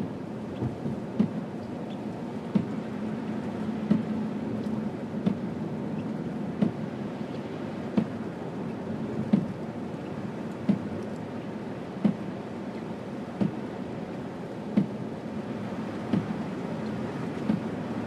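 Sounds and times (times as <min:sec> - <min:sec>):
road and engine hum: 0:00.0 - 0:18.0
windshield wipers knocking: 0:00.6 - 0:01.4, 0:02.5 - 0:02.8, 0:03.8 - 0:04.1, 0:05.2 - 0:05.5, 0:06.5 - 0:06.8, 0:09.2 - 0:09.6, 0:10.6 - 0:11.1, 0:12.0 - 0:12.2, 0:13.4 - 0:13.6, 0:14.7 - 0:15.0, 0:16.1 - 0:16.4, 0:17.4 - 0:17.8.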